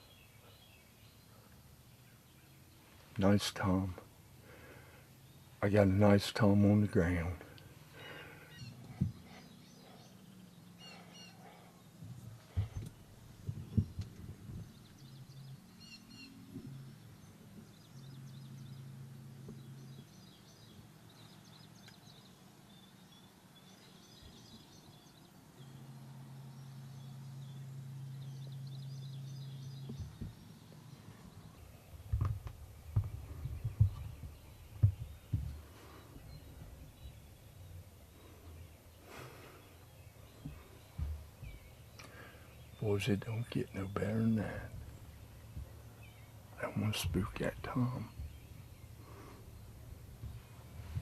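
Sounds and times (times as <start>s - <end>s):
songbirds chirping: 0.0s - 51.0s
short soft thumps: 12.0s - 14.8s, 31.2s - 38.4s, 40.3s - 42.3s, 44.5s - 51.0s
low steady drone: 23.9s - 51.0s.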